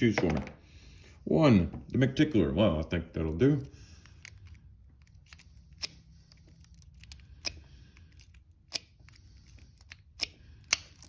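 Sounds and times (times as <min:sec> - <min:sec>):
lock pick scraping: 0:03.9 - 0:11.0.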